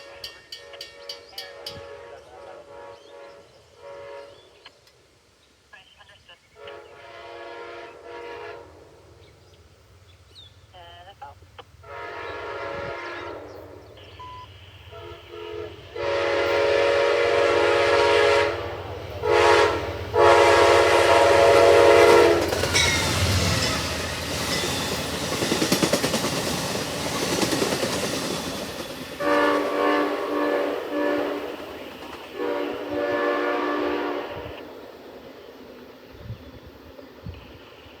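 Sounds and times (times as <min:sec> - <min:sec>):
train air horn blasts: 0:00.0 - 0:04.6, 0:06.6 - 0:09.2, 0:11.8 - 0:25.1, 0:28.3 - 0:34.7
train rushing past: 0:11.7 - 0:38.0.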